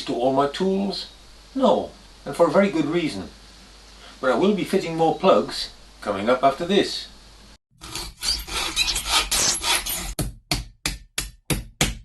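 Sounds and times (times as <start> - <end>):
hand tool scraping on wood: 7.8 - 10.2.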